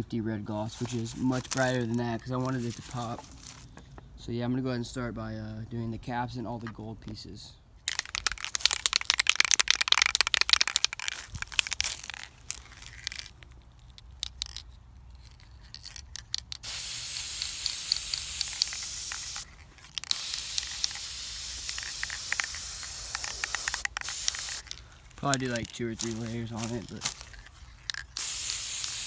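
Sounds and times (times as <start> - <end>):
spray can hissing: 16.6 - 26.8, 28.1 - 29.0.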